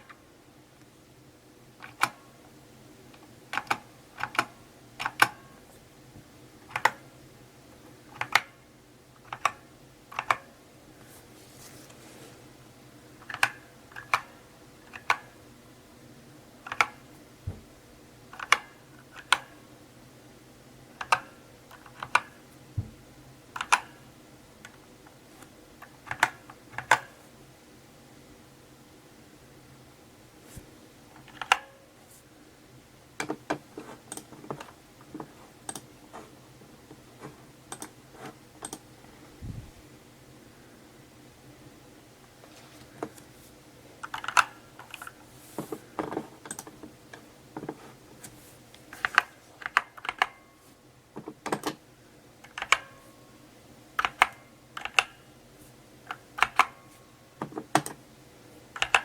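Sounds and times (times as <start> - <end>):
mechanical keyboard key clicks: 54.0 - 55.1, 58.8 - 59.0.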